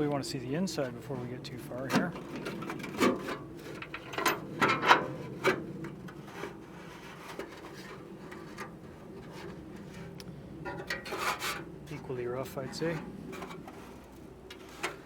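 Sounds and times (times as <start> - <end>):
toolbox rubbing and rattling: 1.1 - 12.0, 12.6 - 15.0
metal toolbox clicks and scrapes: 1.9 - 11.7, 13.3 - 15.0.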